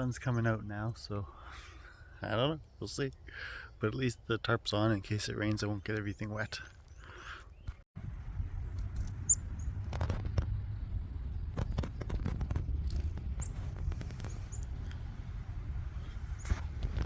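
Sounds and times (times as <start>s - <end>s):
wind buffeting microphone: 8.0s - 17.0s.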